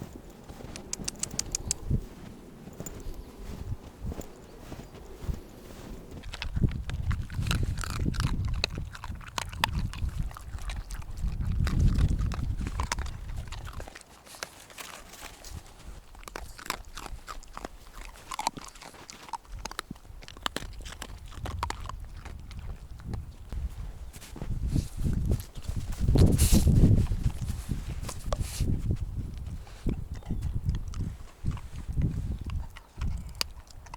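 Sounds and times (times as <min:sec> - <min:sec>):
puppy hiccupping clicks: 0:00.7 - 0:01.9.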